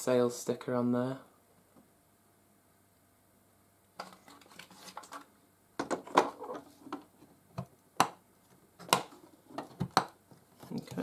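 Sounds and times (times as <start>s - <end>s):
hands handling plastic vacuum parts: 4.0s - 7.7s.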